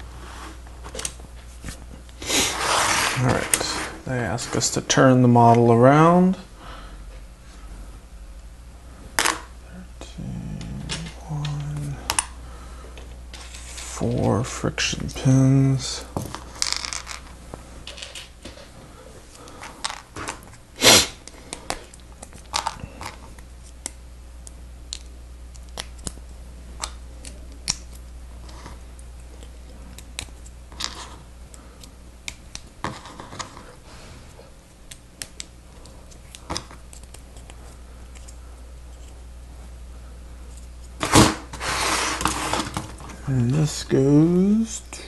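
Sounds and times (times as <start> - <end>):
steady low hum: 0.0 - 45.0.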